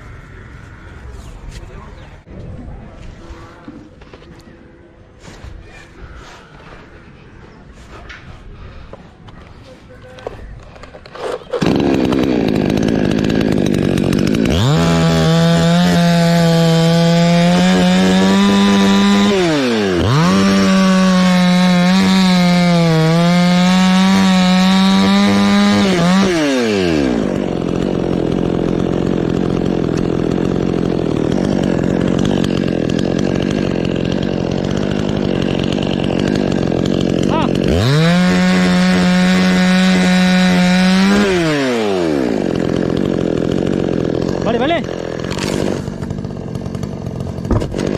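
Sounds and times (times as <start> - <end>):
chainsaw cutting wood: 10.2 - 47.9.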